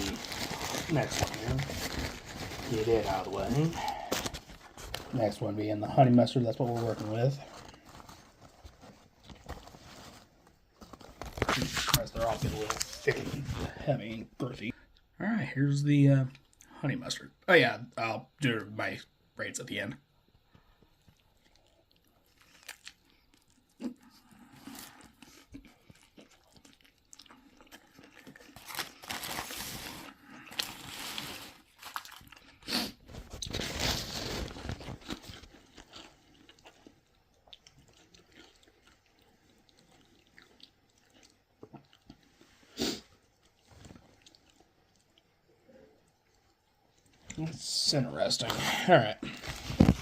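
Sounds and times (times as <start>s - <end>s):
person chewing crunchy food: 20.5s - 47.4s.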